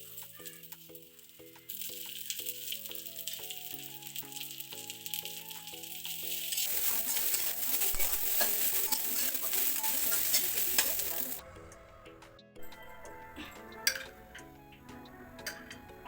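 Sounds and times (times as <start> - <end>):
food sizzling in a hot pan: 0.0 - 11.4
simple background melody: 0.0 - 16.0.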